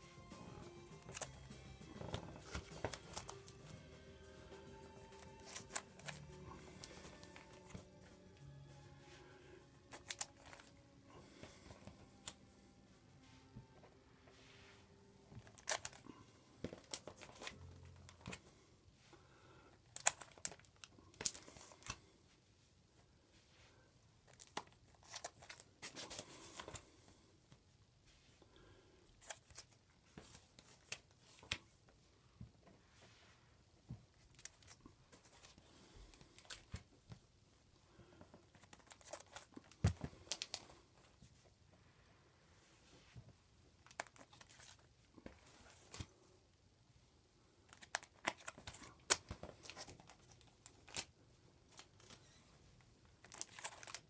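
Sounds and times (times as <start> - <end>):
paper or plastic crinkling: 53.2 - 54.0.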